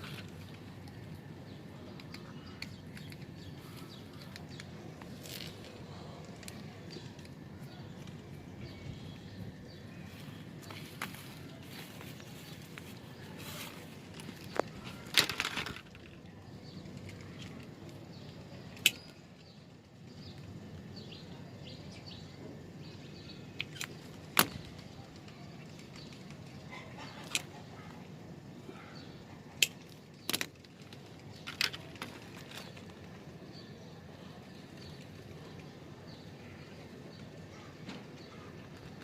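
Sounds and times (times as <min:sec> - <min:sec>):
low background noise: 0:00.0 - 0:39.0
cable connector parts clicking: 0:01.9 - 0:08.2.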